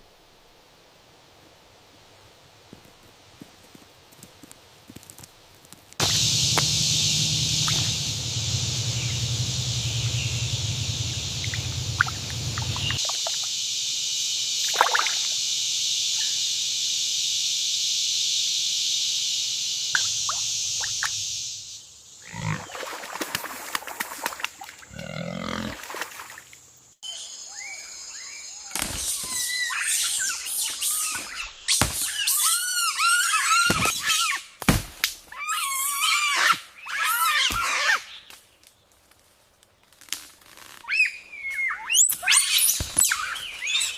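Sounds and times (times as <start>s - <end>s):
warbling animal calls: 6.0s - 13.0s, 22.2s - 22.7s
steady high hiss: 6.0s - 22.2s.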